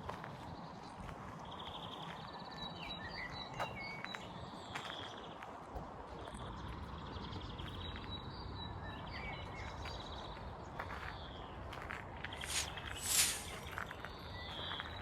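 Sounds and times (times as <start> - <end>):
rustling: 12.4 - 13.8.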